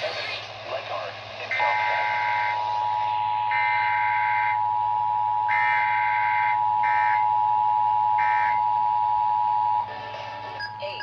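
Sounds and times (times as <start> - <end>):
higher alarm beeps: 3.4 - 4.8, 5.4 - 7.5, 8.1 - 8.9, 10.6 - 11.0.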